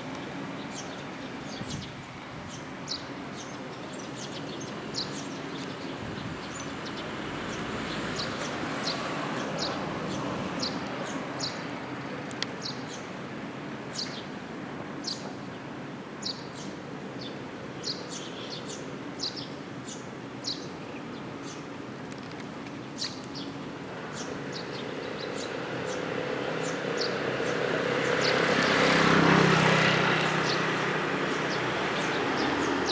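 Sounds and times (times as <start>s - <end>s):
vehicle passing: 25.6s - 32.9s.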